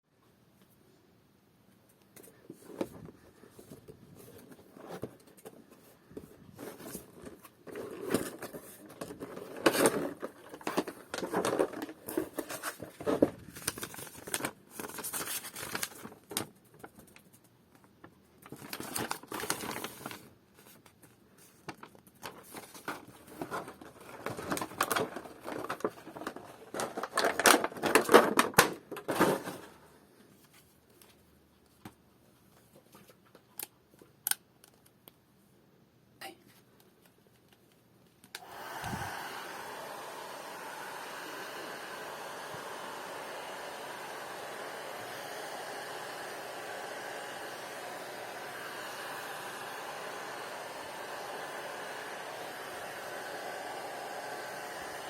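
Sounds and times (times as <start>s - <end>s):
crinkling and rustling handling: 1.7s - 35.2s.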